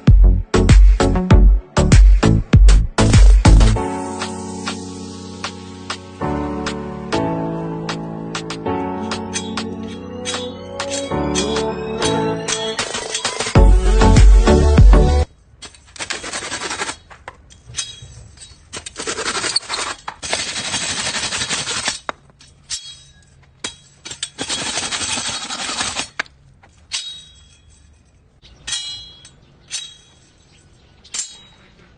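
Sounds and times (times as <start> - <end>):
sharp metallic clinks: 9.0 - 11.8, 17.4 - 18.9, 21.8 - 24.4, 26.7 - 31.7
rasping scraping noise: 15.4 - 28.9.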